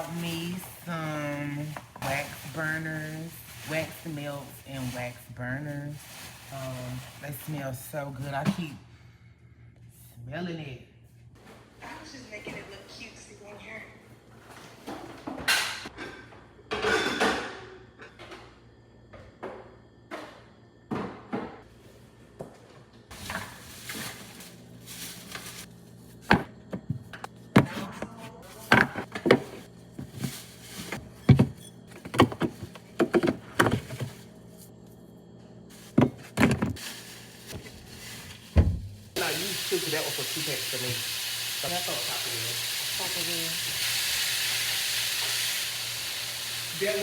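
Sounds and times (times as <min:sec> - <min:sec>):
steady low hum: 0:18.7 - 0:39.2
objects knocking and thunking: 0:22.4 - 0:34.3, 0:35.8 - 0:36.9, 0:37.5 - 0:39.2.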